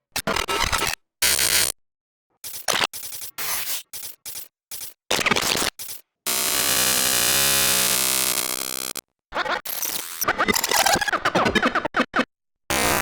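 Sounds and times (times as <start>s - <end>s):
harsh buzzing static: 2.4s - 9.0s
stuttering static bursts: 2.4s - 9.0s.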